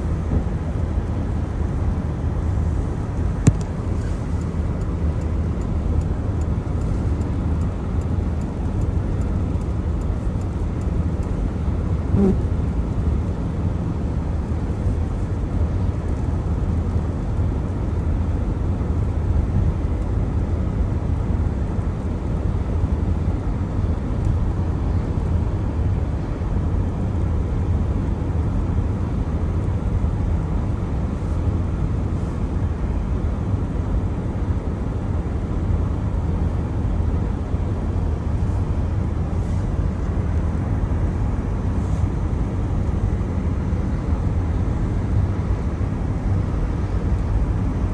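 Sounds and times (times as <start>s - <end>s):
car driving on wet road: 0.0s - 19.0s, 34.9s - 47.9s.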